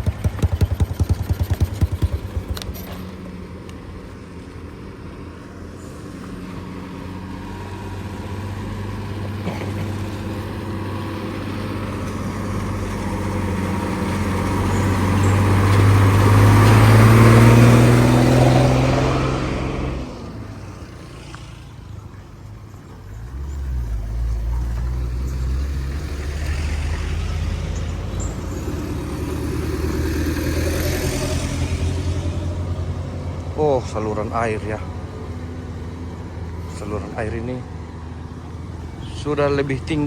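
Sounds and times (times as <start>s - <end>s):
engine idling: 0.0s - 7.1s
vehicle engine passing: 0.0s - 40.0s.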